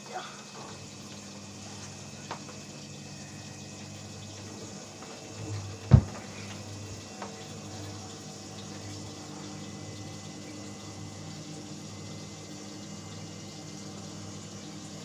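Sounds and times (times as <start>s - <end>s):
low machine hum: 0.0s - 15.0s
water sloshing in washing machine: 0.0s - 15.0s
sharp thump: 5.9s - 6.2s.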